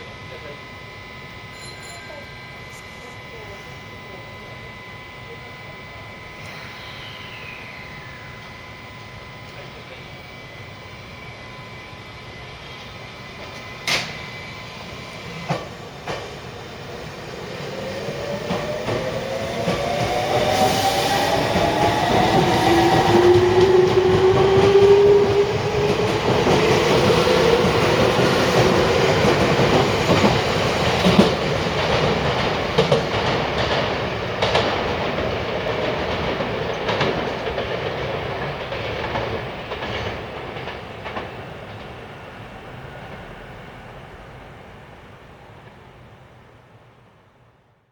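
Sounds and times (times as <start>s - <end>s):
train clunks: 12.7s - 46.4s
train wheels clacking: 13.4s - 44.0s.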